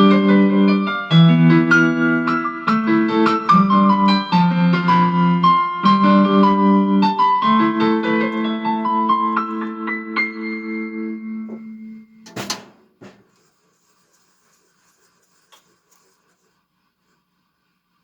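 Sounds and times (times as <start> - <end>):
electric piano chords: 0.0 - 13.1.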